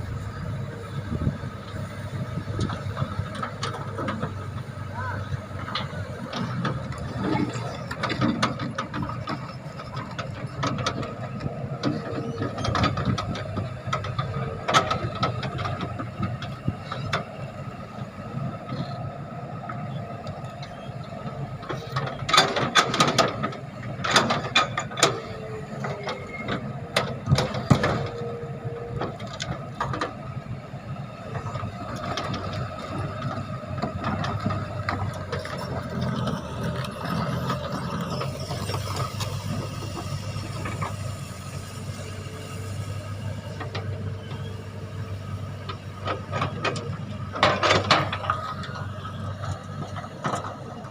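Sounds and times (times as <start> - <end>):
excavator engine and hydraulic drone: 0.0 - 50.9
metallic clanks and knocks: 5.6 - 17.3, 21.6 - 28.3, 45.6 - 49.0.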